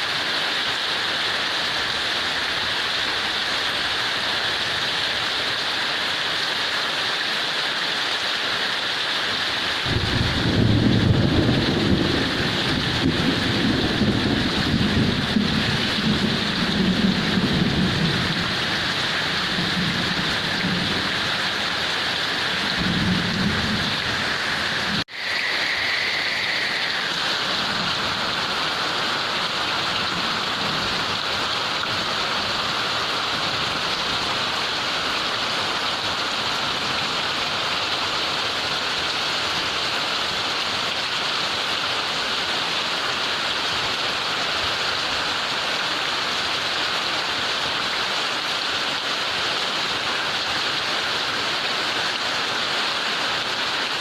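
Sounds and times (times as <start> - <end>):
heavy rain: 0.0 - 54.0
low rolling thunder: 9.8 - 25.0.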